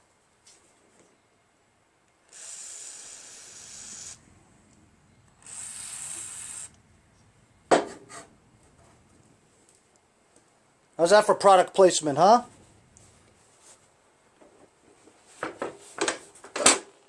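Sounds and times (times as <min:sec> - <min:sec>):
aerosol spray can hissing: 0:02.3 - 0:04.2, 0:05.4 - 0:06.8.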